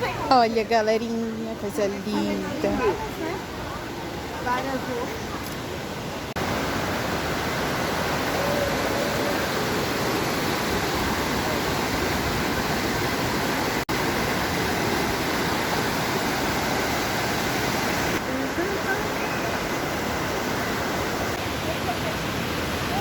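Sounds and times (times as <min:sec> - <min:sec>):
large waterfall rushing: 0:01.6 - 0:23.0.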